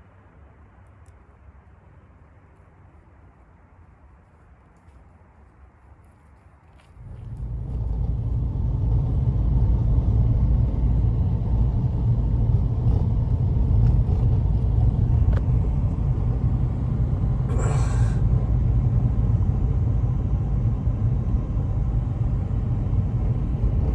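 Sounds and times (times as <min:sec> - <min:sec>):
wind rumbling on microphone: 0:06.3 - 0:23.9.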